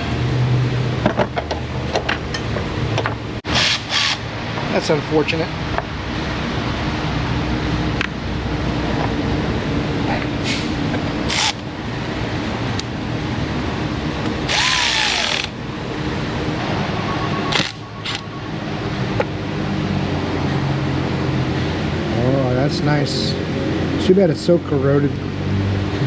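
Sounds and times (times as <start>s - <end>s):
machine hum: 10.8s - 22.0s.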